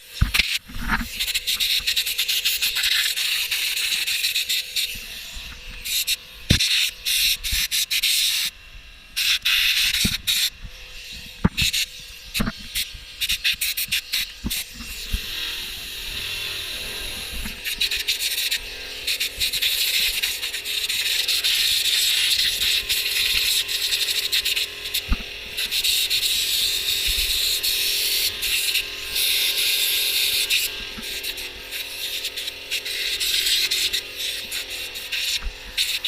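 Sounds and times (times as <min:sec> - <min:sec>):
harsh hissing and rubbing: 0:09.2 - 0:36.0.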